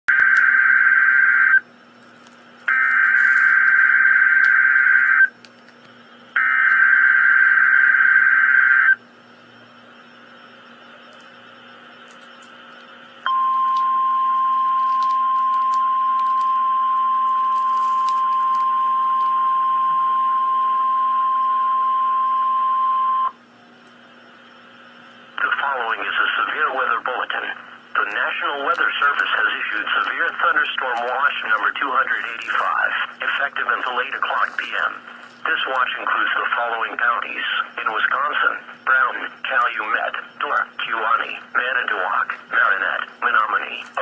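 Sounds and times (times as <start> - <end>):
steady alarm tone: 0.1 - 1.9, 2.6 - 5.4, 6.0 - 44.0
screeching digital data bursts: 2.7 - 5.4, 6.4 - 9.0, 24.2 - 43.8
radio hiss: 15.0 - 44.0.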